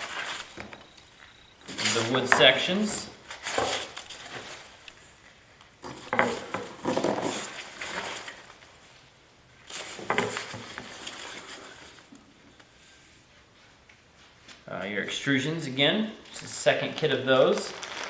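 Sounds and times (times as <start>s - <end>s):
packaging rustling: 0.0s - 5.0s, 6.2s - 8.8s, 9.7s - 12.1s, 17.4s - 18.0s
parts knocking and clattering: 5.8s - 8.1s, 10.0s - 10.9s.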